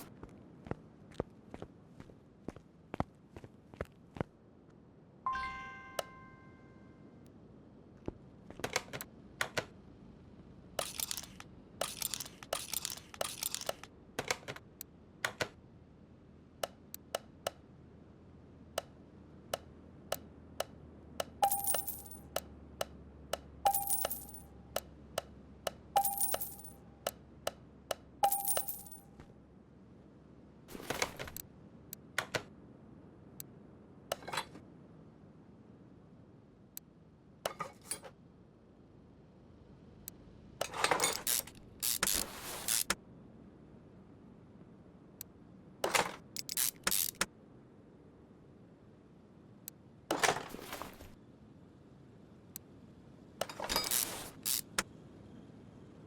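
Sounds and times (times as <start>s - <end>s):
ringing metallic strikes: 5.3s - 7.0s
small metal objects clinking: 10.8s - 13.8s, 21.4s - 22.3s, 23.7s - 24.4s, 26.0s - 26.8s, 28.2s - 29.1s.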